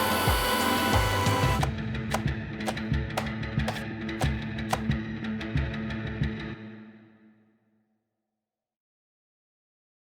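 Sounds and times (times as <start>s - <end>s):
vacuum cleaner whirring: 0.0s - 4.8s
music with kick-drum beat: 0.0s - 4.9s.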